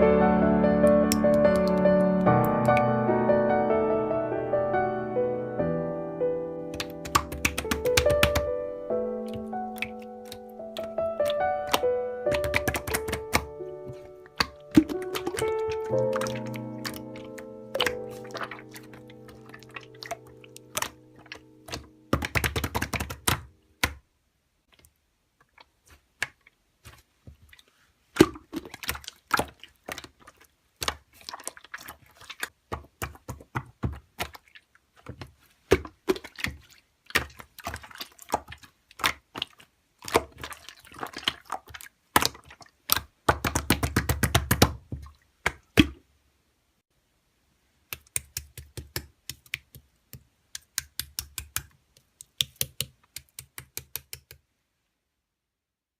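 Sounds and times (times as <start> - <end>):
slime squeezed by hand: 9.3 - 23.0.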